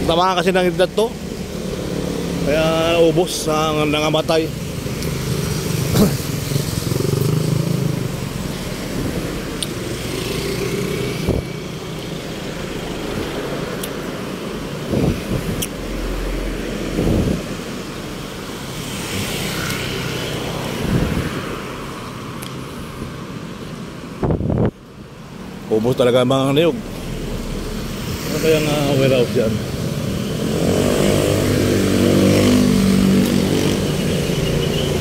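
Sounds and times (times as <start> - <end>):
passing vehicles: 0.0 - 35.0.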